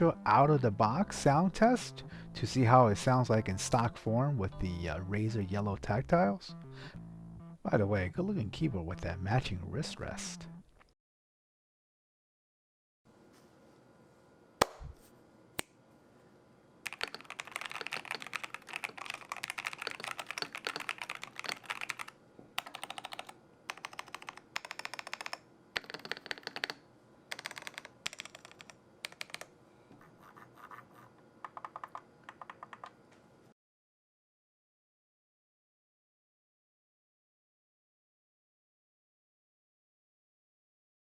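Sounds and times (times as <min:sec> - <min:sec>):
mechanical keyboard typing: 0:16.9 - 0:29.5, 0:31.5 - 0:33.0.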